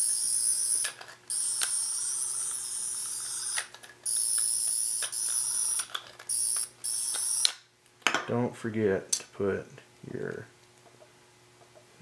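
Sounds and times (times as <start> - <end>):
high-pitched electronic toy buzz: 0.0 - 7.6.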